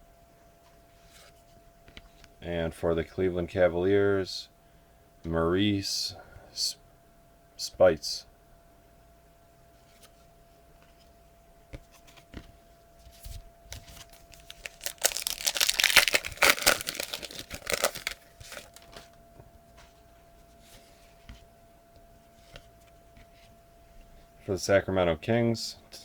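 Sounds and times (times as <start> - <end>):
wrapper tearing and crinkling: 13.7 - 19.0.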